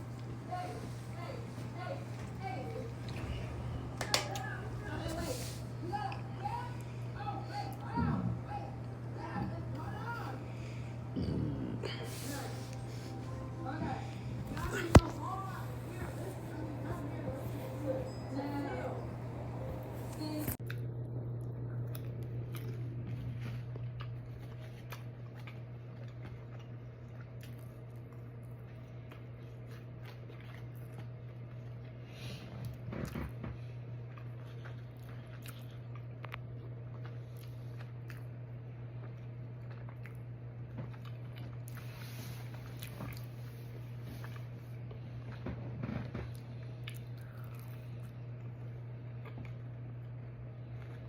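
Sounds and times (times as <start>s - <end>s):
low hum: 0.0s - 24.3s
chewing and crunching food: 0.0s - 51.0s
steady low hum: 0.0s - 51.0s.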